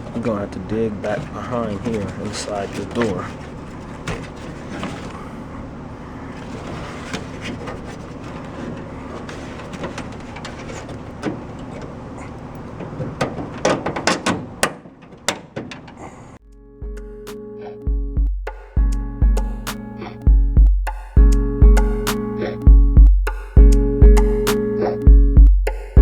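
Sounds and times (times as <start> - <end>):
steady background noise: 0.0 - 16.4
metal clicks and knocks: 6.4 - 16.0.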